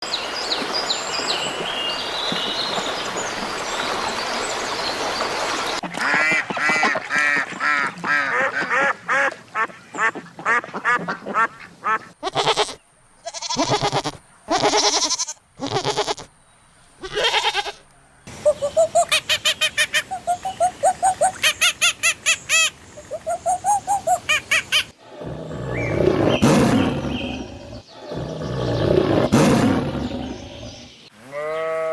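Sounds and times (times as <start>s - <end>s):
ducks quacking: 5.8s - 16.2s.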